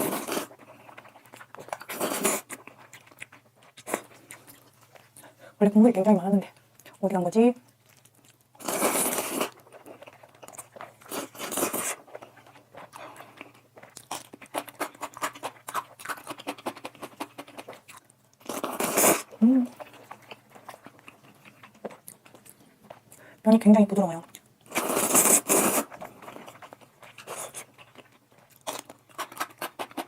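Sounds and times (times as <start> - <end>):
wet chewing clicks: 24.2 - 30.0.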